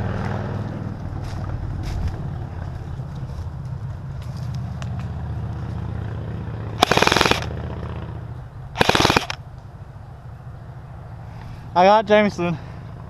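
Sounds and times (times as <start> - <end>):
airsoft rifle bursts: 6.8 - 7.5, 8.8 - 9.4.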